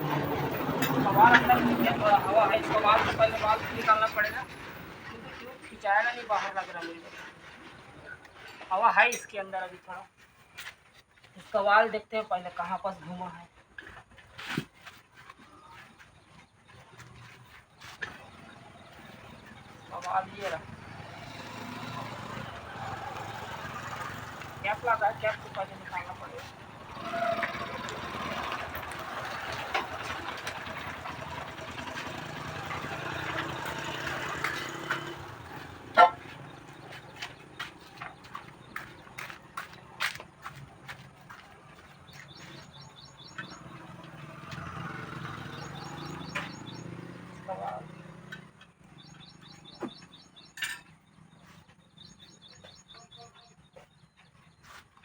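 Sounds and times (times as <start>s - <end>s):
small bird chirping rapidly: 41.9s - 47.2s, 48.8s - 54.6s.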